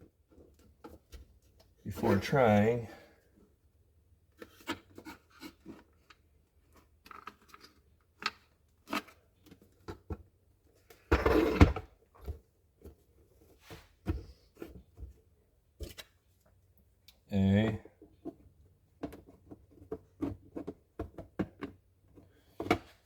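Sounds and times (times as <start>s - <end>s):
hands handling plastic parts: 4.3s - 11.1s.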